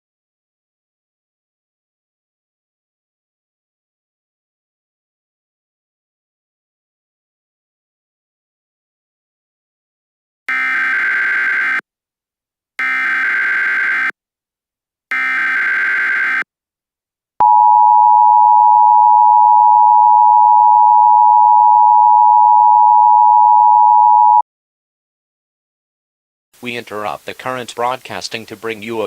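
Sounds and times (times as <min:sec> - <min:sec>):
steady two-tone attention signal: 0:17.4 - 0:24.4.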